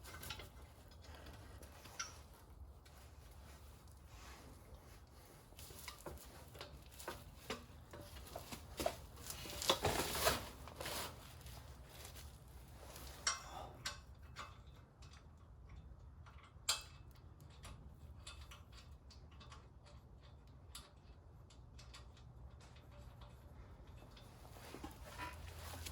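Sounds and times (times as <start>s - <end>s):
scraping and rustling: 0.0s - 13.3s, 24.2s - 25.9s.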